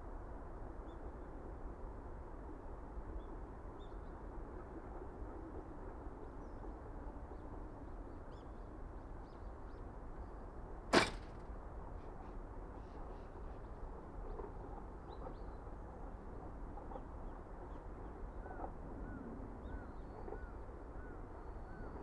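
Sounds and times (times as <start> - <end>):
sharp click: 11.0 - 11.4.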